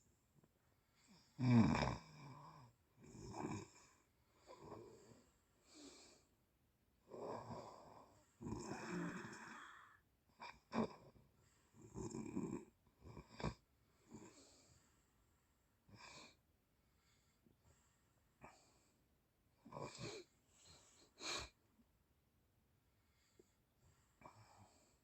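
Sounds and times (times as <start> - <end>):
person snoring: 7.1 - 10.0.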